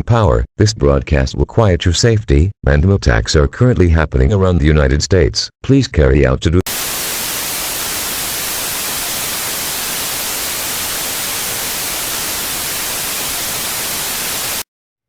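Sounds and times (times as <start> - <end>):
static hiss: 6.7 - 14.6.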